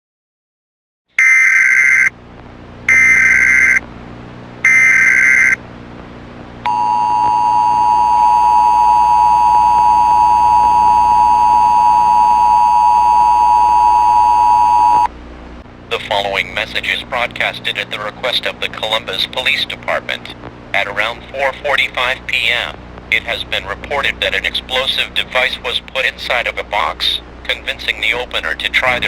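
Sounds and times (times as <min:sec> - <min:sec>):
digital data tone bursts: 0:01.2 - 0:02.1, 0:02.9 - 0:03.8, 0:04.7 - 0:05.6
two-tone attention signal: 0:01.2 - 0:02.1, 0:02.9 - 0:03.8, 0:04.7 - 0:05.6, 0:06.7 - 0:15.1.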